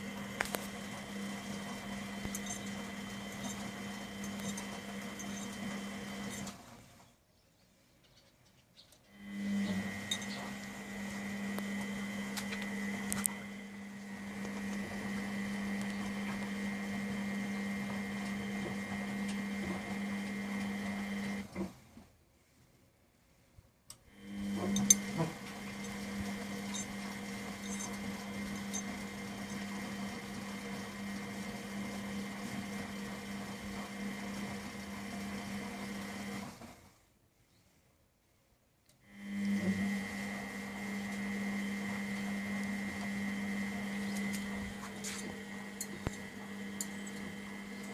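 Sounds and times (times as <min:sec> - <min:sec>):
faint high whine: 0:00.0 - 0:06.5
washing machine motor hum: 0:00.0 - 0:07.0, 0:09.1 - 0:21.9, 0:24.1 - 0:37.0, 0:39.0 - 0:47.9.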